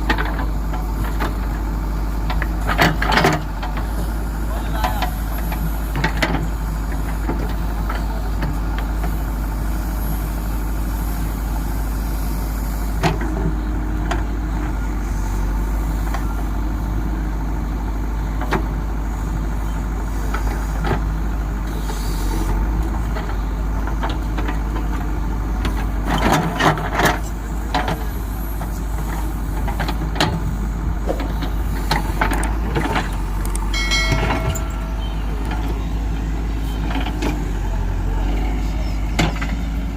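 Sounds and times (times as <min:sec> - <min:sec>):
diesel engine running: 0:00.0 - 0:39.9
knocks and clanks: 0:31.0 - 0:37.4.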